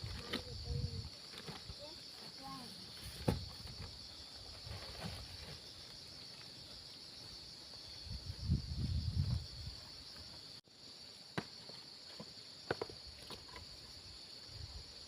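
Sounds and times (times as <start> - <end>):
insects chirring: 0.0 - 15.0
rustling: 1.2 - 6.6.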